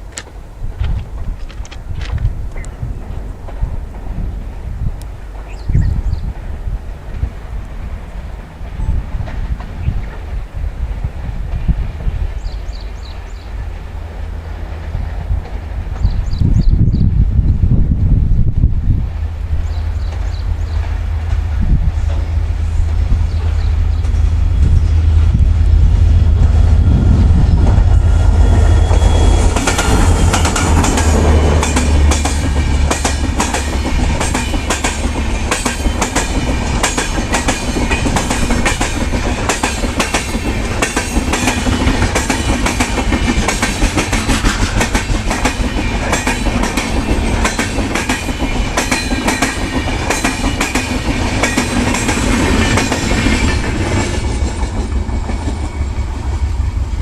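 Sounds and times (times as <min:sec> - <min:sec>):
diesel locomotive rumbling past: 0:00.0 - 0:57.0
train wheels clacking over rail joints: 0:27.7 - 0:56.6.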